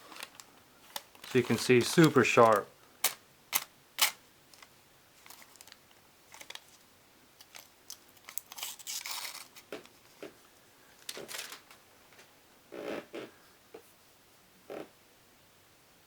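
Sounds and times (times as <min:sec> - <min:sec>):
paper rustling and crinkling: 0:00.0 - 0:06.8, 0:07.4 - 0:10.2, 0:11.0 - 0:12.3
knife snipping paper: 0:01.2 - 0:03.2.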